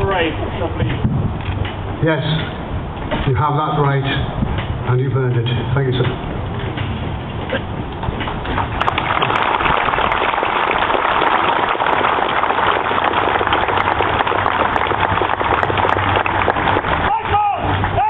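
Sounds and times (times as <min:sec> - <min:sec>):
crowd applauding: 0:08.5 - 0:18.0.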